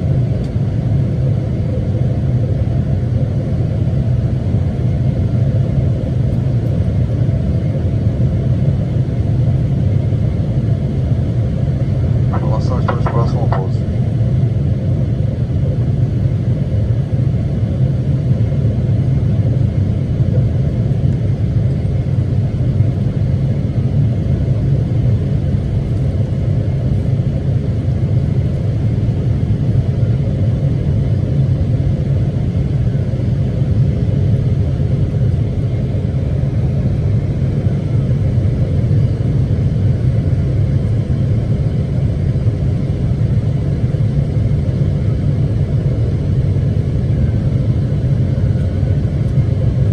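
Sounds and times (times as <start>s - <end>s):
airliner low rumble: 0.0s - 49.9s.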